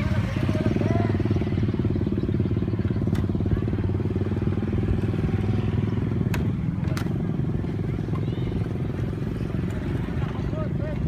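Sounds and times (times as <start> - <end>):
engine chugging: 0.0 - 11.0.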